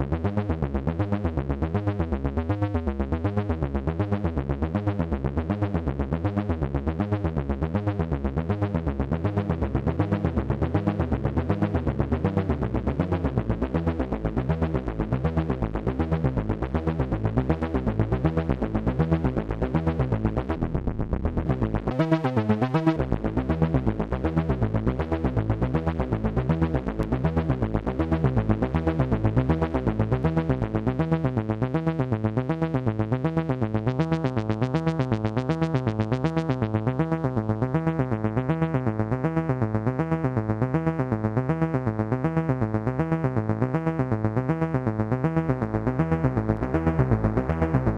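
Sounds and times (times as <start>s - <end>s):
synthesizer pulsing modulated tone: 21.9s - 23.0s
synthesizer sweep: 21.9s - 23.0s.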